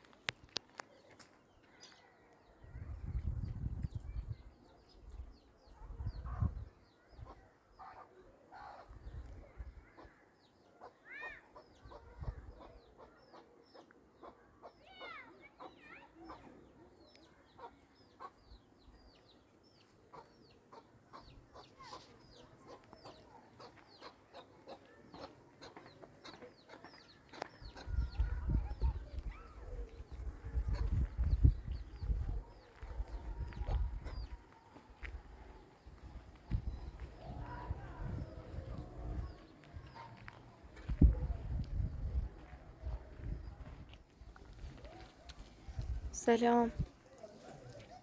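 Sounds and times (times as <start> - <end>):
chickens clucking: 20.1 - 34.4.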